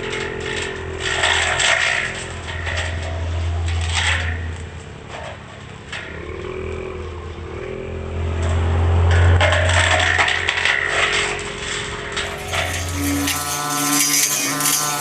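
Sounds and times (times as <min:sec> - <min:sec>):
brush cutter engine running: 0:00.0 - 0:04.5, 0:10.6 - 0:15.0
scraping noise: 0:08.4 - 0:15.0.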